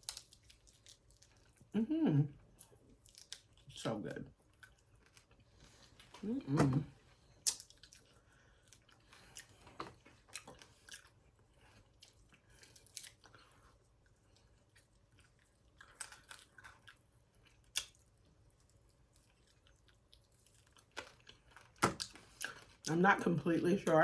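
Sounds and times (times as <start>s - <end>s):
chewing fried fish: 0.0s - 24.0s.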